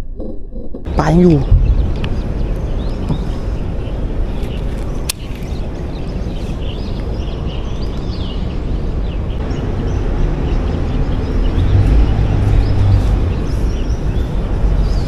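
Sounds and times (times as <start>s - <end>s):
steady low rumble: 0.0s - 15.0s
birds chirping: 0.9s - 15.0s
sharp click: 5.1s - 5.5s.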